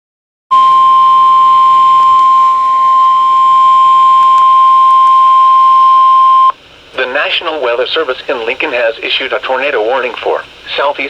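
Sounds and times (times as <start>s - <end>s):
loud steady alarm tone: 0.5s - 6.6s.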